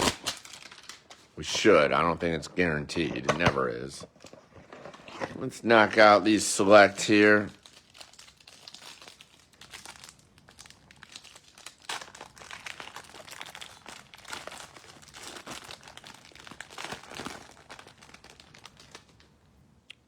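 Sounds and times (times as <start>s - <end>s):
wrappers tearing and crinkling: 0.0s - 1.8s, 6.9s - 19.4s.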